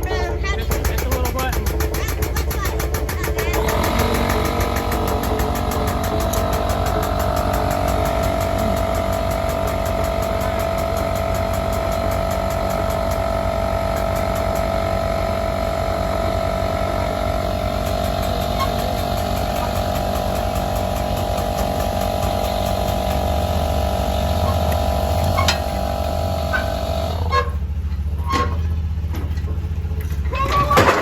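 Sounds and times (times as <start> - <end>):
engine idling: 0.0 - 31.0
electric air pump whining: 3.1 - 27.5.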